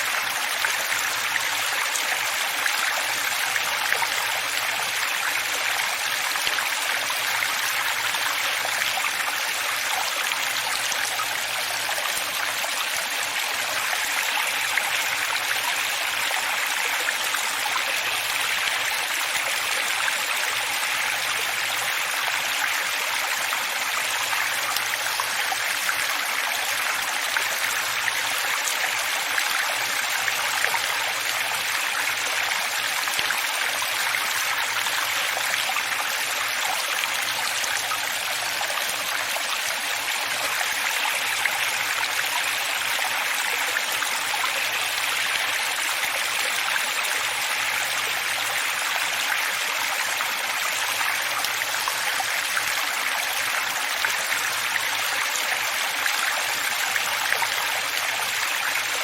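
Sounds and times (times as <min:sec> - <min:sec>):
running water: 0:00.0 - 0:59.0.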